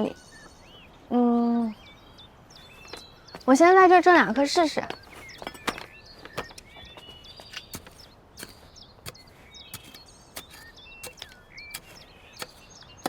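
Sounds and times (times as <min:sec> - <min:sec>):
bird chirps: 0:00.0 - 0:13.0
taps and clicks of digging soil: 0:04.2 - 0:13.0.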